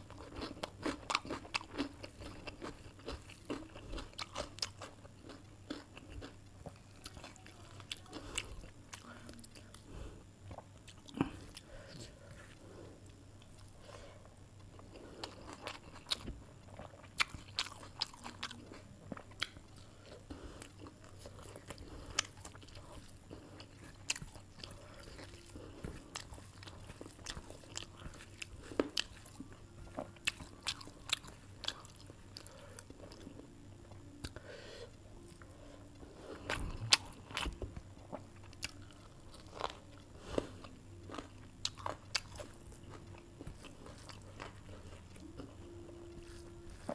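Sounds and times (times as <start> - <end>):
person chewing with mouth clicks: 0.1 - 9.8, 14.8 - 34.4, 36.4 - 46.9.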